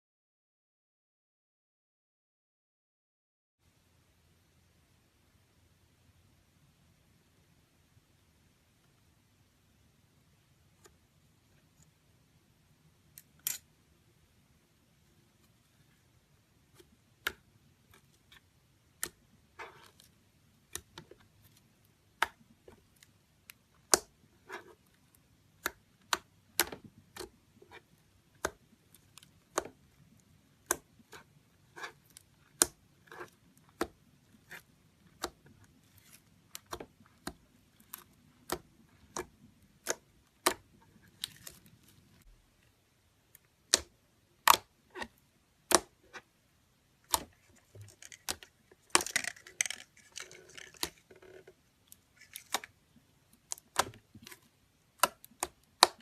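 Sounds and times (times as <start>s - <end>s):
soft slime crackles: 16.7s - 46.2s.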